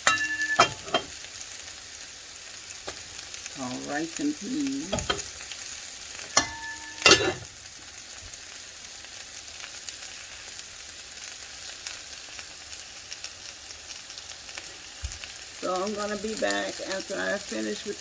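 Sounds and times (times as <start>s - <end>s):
sharp ringing clinks: 0.0s - 1.1s, 6.4s - 7.4s
chicken sizzling in a pan: 0.0s - 18.0s.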